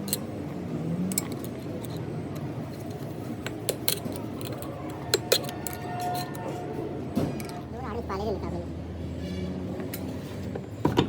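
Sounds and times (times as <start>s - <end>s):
metal tools clinking: 0.0s - 0.4s, 1.0s - 6.5s
low background hum: 0.0s - 11.0s.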